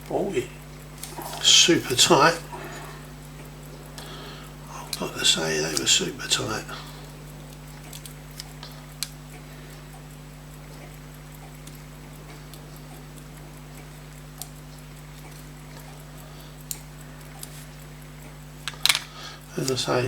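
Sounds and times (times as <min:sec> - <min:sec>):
steady low hum: 0:00.0 - 0:20.0
small metal tools clicking: 0:07.5 - 0:09.4, 0:18.6 - 0:20.0.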